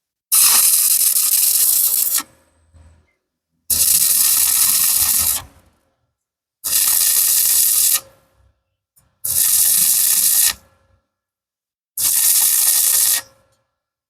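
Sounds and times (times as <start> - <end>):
welding arc hissing: 0.3 - 2.2, 3.7 - 5.5, 6.7 - 8.0, 9.3 - 10.6, 12.0 - 13.2.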